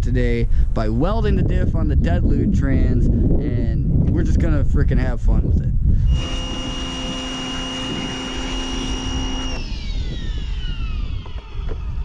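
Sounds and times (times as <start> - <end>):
electric motor whine: 6.0 - 12.0
motor spinning down: 6.1 - 12.0.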